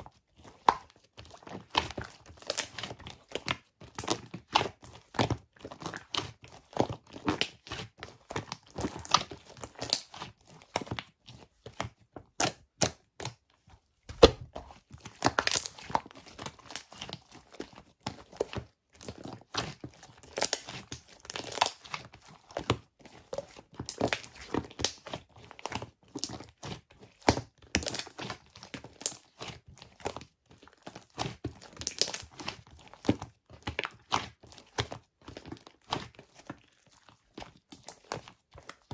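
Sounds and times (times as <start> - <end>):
wrapping tearing: 15.2 - 15.9
crinkly wrapping crackling: 15.2 - 17.2, 20.0 - 22.0, 31.8 - 32.4.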